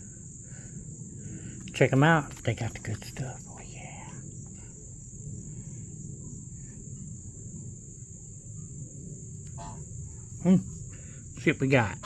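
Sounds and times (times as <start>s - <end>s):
crickets trilling: 0.0s - 12.0s
low background rumble: 0.0s - 12.0s.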